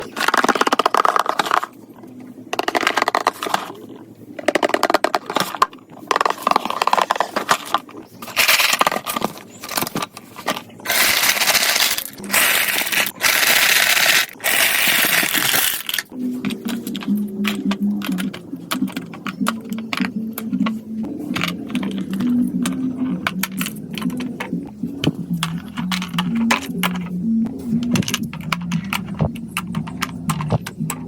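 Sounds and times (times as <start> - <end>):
marbles rattling through marble run: 0.0 - 1.8, 2.5 - 20.5
marbles rolling: 0.0 - 1.8, 2.5 - 3.8, 4.4 - 20.7
music: 16.1 - 31.0.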